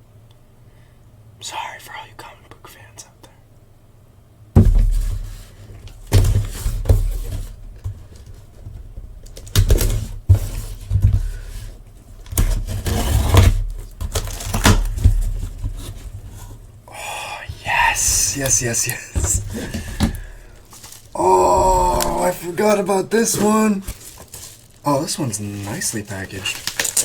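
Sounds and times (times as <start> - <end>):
heavy thumps of boxes: 4.6 - 8.0, 17.5 - 20.6
cardboard and plastic packaging rustling: 4.6 - 16.8, 17.4 - 27.0.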